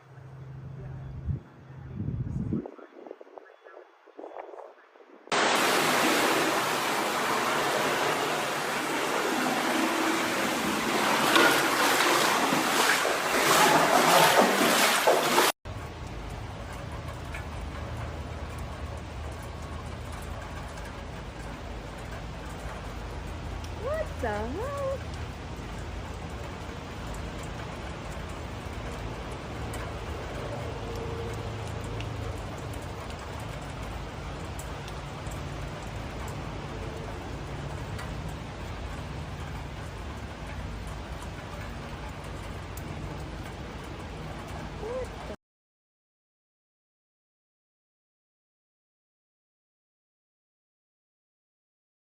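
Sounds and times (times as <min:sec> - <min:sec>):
heavy rain falling: 0:05.3 - 0:45.4
water rushing: 0:05.3 - 0:45.4.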